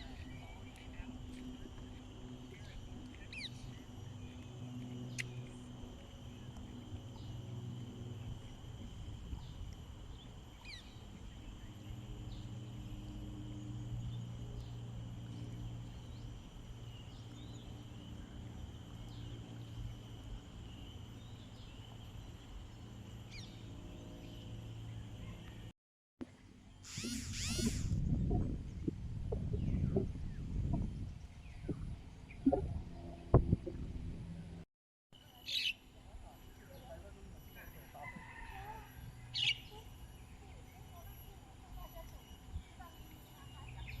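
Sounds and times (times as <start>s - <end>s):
high insect drone: 0.0s - 25.6s, 26.8s - 28.0s, 35.2s - 44.0s
low steady hum: 0.0s - 25.7s
short bird chirps: 26.9s - 28.0s.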